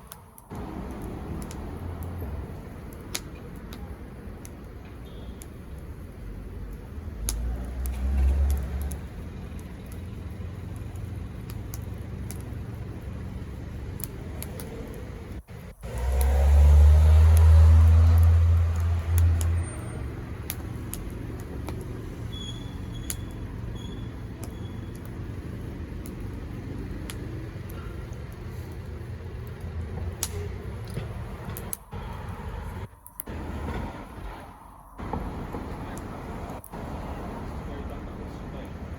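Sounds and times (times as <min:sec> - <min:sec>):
wood fire crackling and popping: 0:00.0 - 0:38.9.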